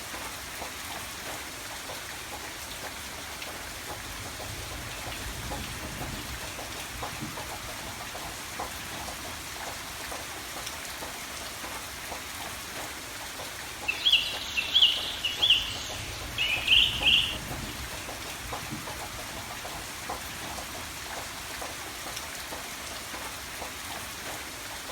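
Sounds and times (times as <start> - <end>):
steady rain falling: 0.0 - 24.9
bird chirping: 13.9 - 17.7.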